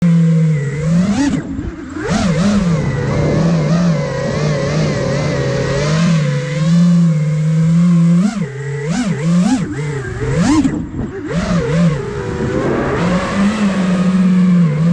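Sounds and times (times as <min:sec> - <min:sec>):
drone propellers whining: 0:00.0 - 0:14.9.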